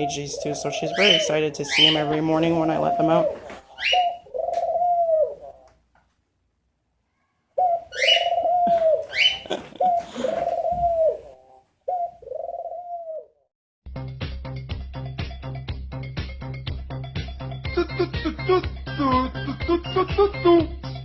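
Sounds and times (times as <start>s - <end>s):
doves cooing: 0.0s - 5.7s, 7.6s - 13.4s.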